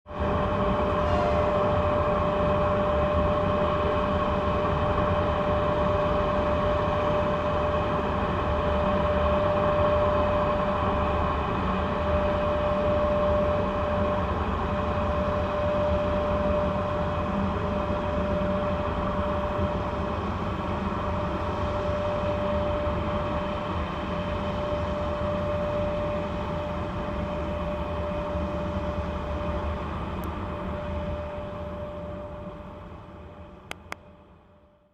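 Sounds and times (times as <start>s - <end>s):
locomotive cooling fans whining: 0.1s - 34.9s
low rumble: 0.2s - 3.0s.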